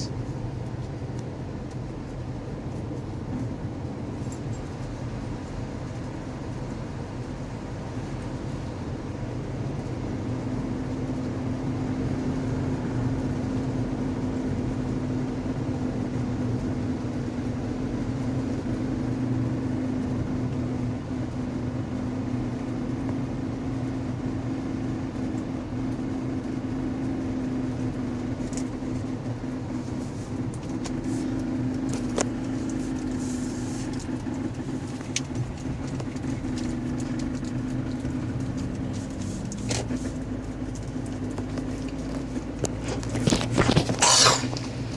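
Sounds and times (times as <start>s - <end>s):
car engine droning: 0.0s - 44.9s.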